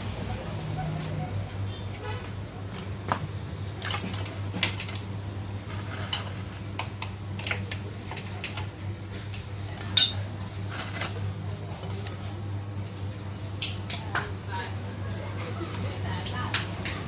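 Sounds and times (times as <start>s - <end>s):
metal tools clinking: 5.7s - 6.8s, 9.7s - 11.1s.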